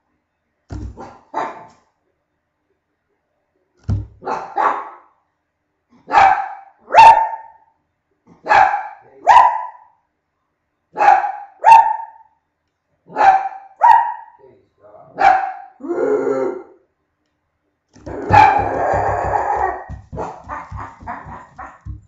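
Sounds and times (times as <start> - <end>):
dog barking: 1.0 - 1.8, 4.2 - 5.1, 6.0 - 7.7, 8.4 - 10.0, 10.9 - 12.4, 13.1 - 14.4, 15.1 - 15.8, 18.2 - 22.0.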